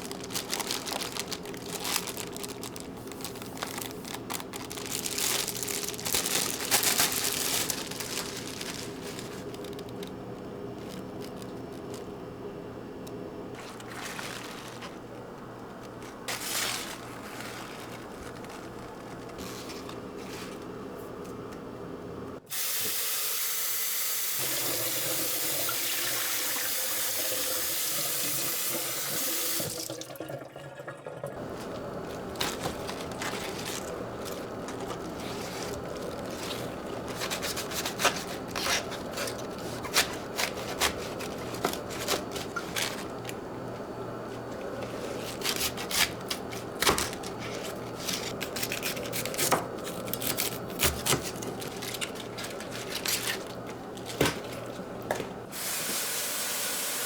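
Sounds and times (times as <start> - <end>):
kitchen tap running: 22.5 - 43.4, 53.4 - 57.0.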